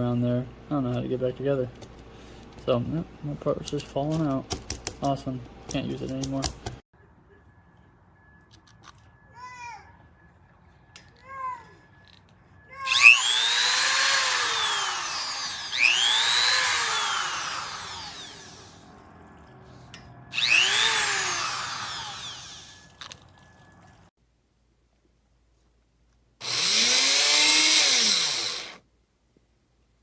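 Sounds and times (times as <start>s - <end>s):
rotary tool motor whining: 12.8s - 18.9s, 20.3s - 23.2s, 26.4s - 28.8s.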